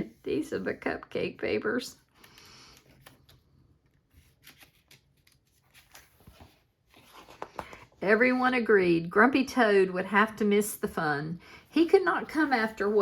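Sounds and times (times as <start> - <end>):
book pages rustling and turning: 2.1 - 8.4, 12.2 - 13.0.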